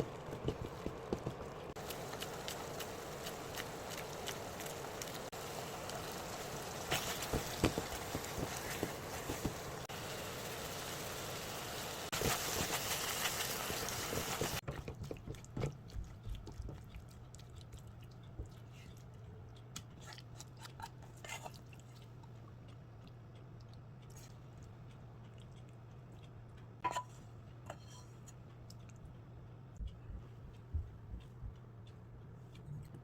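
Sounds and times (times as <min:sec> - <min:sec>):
low steady hum: 0:14.6 - 0:33.0.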